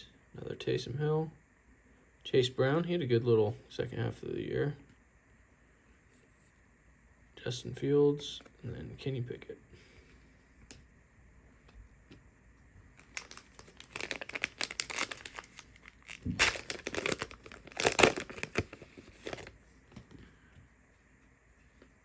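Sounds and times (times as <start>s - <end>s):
plastic wrapper tearing and crinkling: 13.0s - 19.6s.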